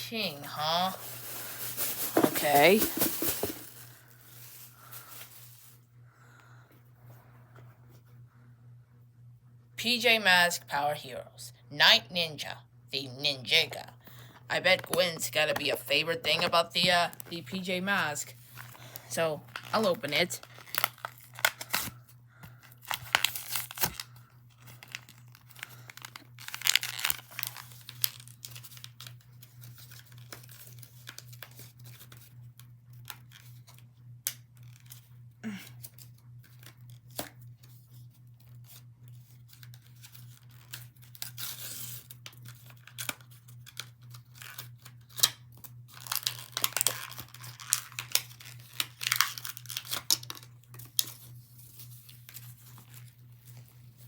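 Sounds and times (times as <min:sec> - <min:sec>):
packaging tearing and crinkling: 0:00.9 - 0:05.8, 0:18.5 - 0:22.0, 0:22.6 - 0:32.1, 0:39.5 - 0:54.0.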